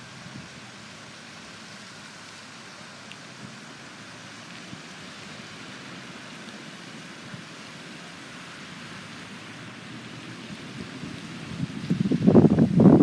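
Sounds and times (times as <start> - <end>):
outdoor background hiss: 0.0 - 13.0.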